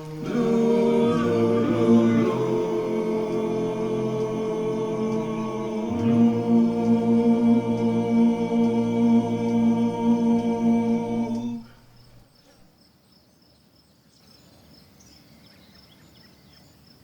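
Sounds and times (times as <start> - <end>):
male choir humming a chord: 0.0 - 11.9.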